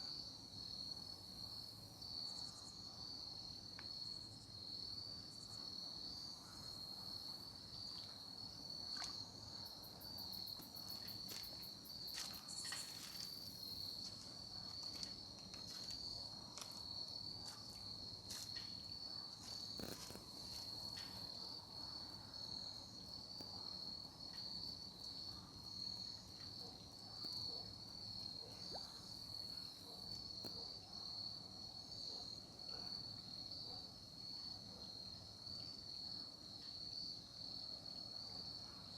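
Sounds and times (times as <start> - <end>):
crickets trilling: 3.9 - 32.1.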